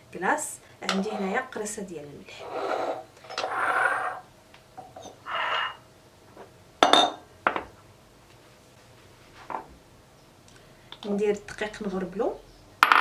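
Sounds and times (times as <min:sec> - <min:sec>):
glass dishes clinking: 0:06.8 - 0:07.7.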